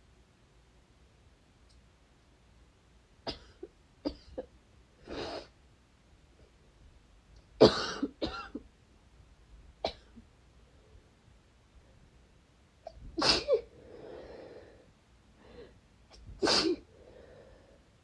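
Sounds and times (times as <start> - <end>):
person coughing dryly: 3.3 - 4.5, 7.6 - 8.6, 13.2 - 13.7, 16.4 - 16.8.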